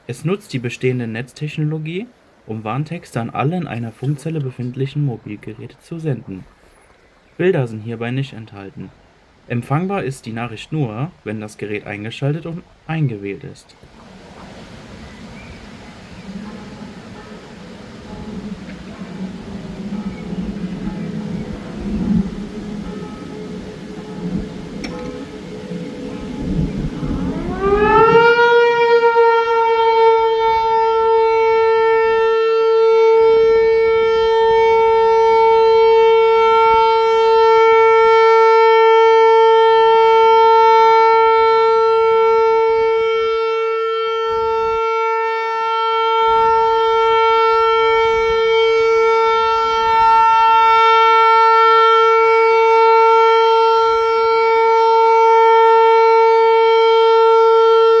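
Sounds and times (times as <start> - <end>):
civil defence siren steady tone: 13.9 - 58.0.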